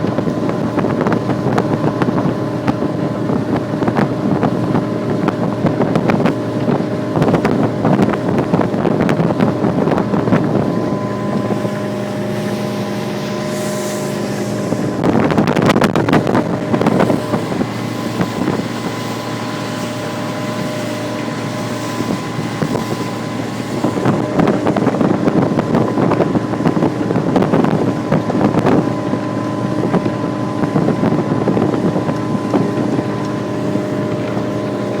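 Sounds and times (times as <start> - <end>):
motorboat engine droning: 0.0 - 35.0
wind buffeting microphone: 0.0 - 35.0.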